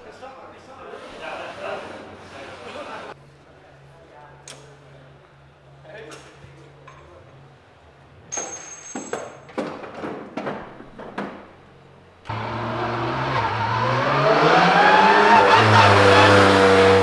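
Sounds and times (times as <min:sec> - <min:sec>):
sharp knocks and clicks: 0:09.0 - 0:11.5
race car engine accelerating: 0:12.3 - 0:17.0.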